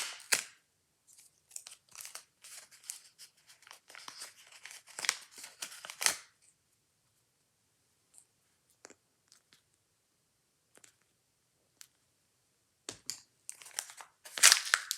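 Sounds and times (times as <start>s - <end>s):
plastic packaging crinkling and tearing: 1.5s - 6.3s, 13.5s - 14.9s.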